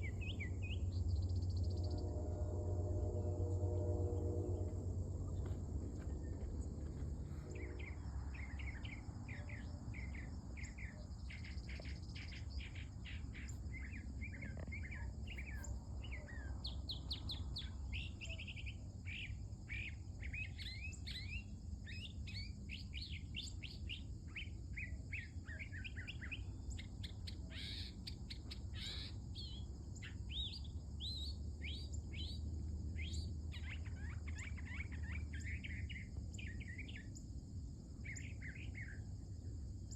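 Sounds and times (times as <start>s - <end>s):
mockingbird singing: 7.5s - 32.4s, 33.0s - 37.2s.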